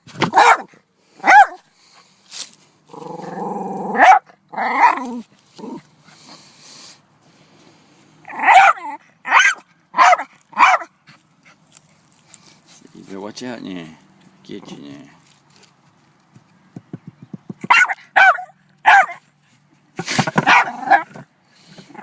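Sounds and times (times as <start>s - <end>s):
dog barking excitedly: 0.2s - 1.6s, 3.9s - 5.1s, 8.3s - 11.0s, 17.6s - 19.2s, 20.3s - 21.2s
dog growling: 2.9s - 5.9s.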